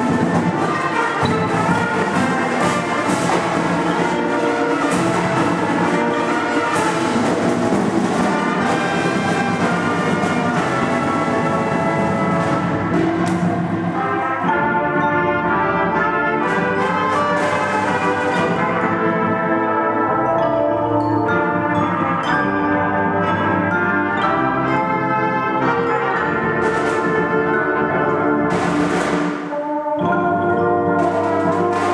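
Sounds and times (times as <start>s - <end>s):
sharp percussion hits: 0.0s - 19.6s, 28.4s - 31.9s
marching band brass and drums: 0.0s - 31.9s.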